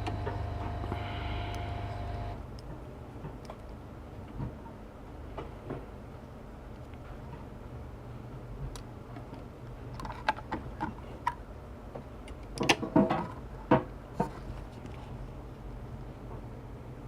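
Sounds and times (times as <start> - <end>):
steady low hum: 0.0 - 4.2.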